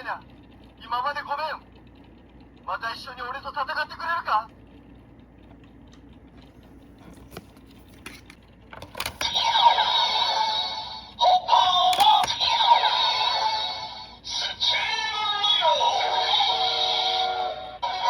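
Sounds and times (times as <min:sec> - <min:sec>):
toy electronic music: 0:09.2 - 0:18.0
synthesized voice: 0:09.3 - 0:18.0.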